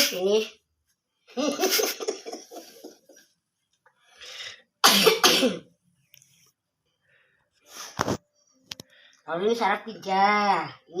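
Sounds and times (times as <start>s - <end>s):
man coughing: 4.8s - 5.6s.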